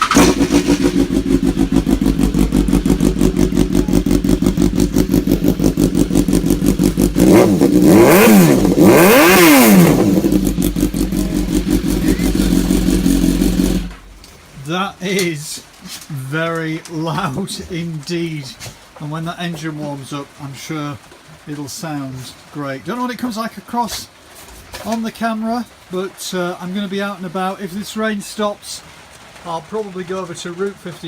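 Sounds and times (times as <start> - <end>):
engine revving: 0.0 - 14.1
motorcycle engine idling: 0.0 - 14.1.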